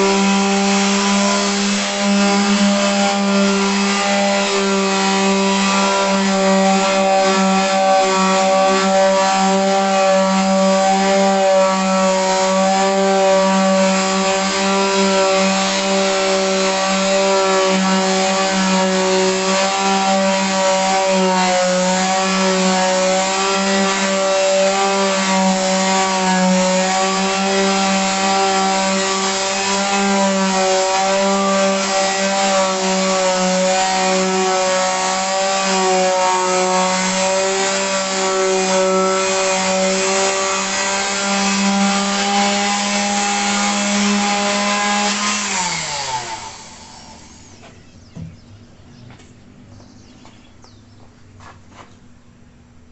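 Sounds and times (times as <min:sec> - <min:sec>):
electric sander on wood: 0:00.0 - 0:48.3.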